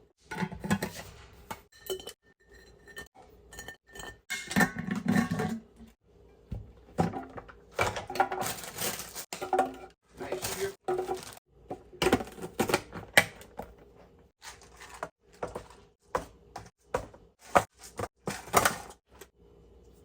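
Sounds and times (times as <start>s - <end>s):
glass containers clinking: 1.7s - 5.7s.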